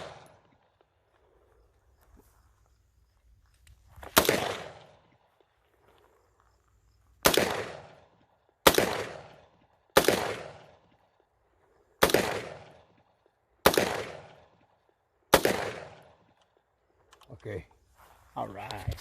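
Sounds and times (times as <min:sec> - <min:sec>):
rifle shots echoing: 0:00.0 - 0:00.8, 0:04.1 - 0:05.2, 0:07.2 - 0:11.2, 0:12.0 - 0:16.4.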